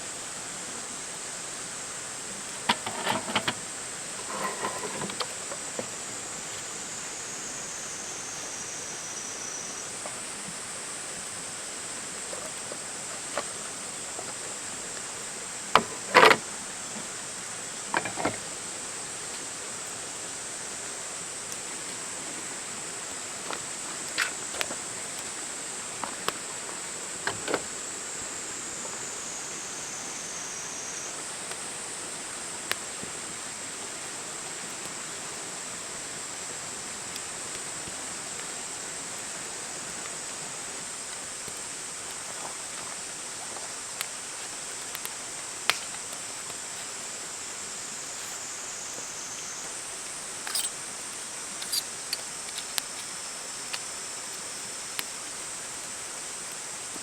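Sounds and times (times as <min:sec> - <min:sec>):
steady hiss: 0:00.0 - 0:57.0
campfire crackling and popping: 0:41.1 - 0:46.9, 0:51.5 - 0:55.4.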